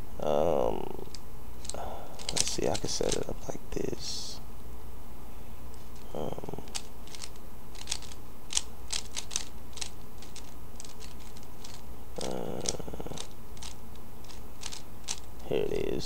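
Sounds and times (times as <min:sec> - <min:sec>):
low hum: 0:00.0 - 0:16.0
puzzle cube plastic clicks: 0:01.6 - 0:03.3, 0:06.7 - 0:15.3.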